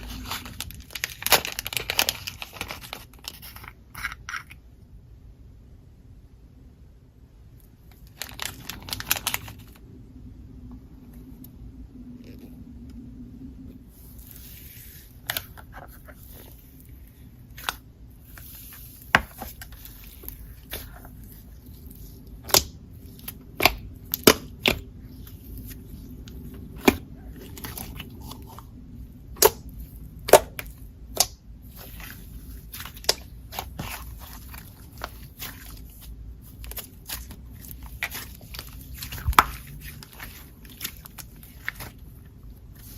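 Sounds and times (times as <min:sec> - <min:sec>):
slime squishing with clicking pops: 0:22.4 - 0:28.0, 0:29.3 - 0:41.9
soft crackles: 0:29.7 - 0:42.9.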